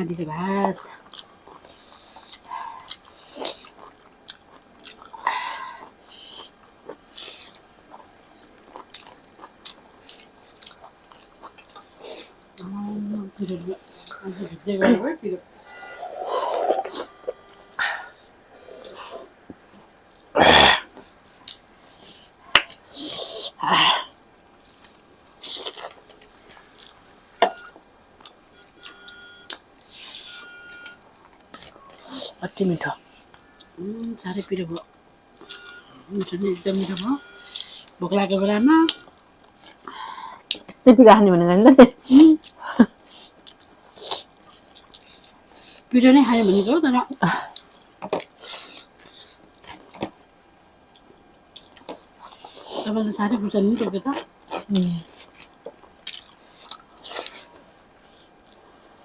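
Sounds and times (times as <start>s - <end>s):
person chewing food: 0.8s - 32.4s, 33.0s - 38.0s, 38.9s - 40.8s, 42.3s - 46.5s, 47.3s - 52.9s, 53.8s - 59.0s
wet mouth clicks and smacking: 1.1s - 7.7s, 43.2s - 45.9s, 54.5s - 57.7s.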